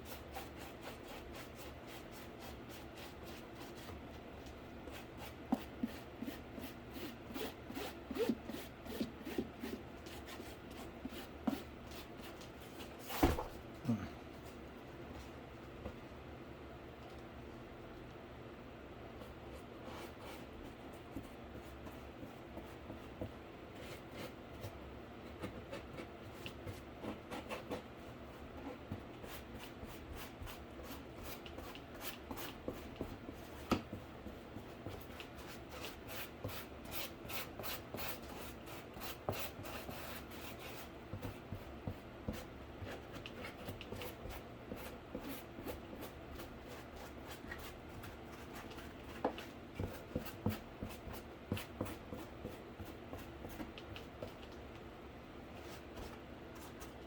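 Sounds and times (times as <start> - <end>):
steady low hum: 9.2 - 57.0
paintbrush scratching on cardboard: 34.3 - 54.5.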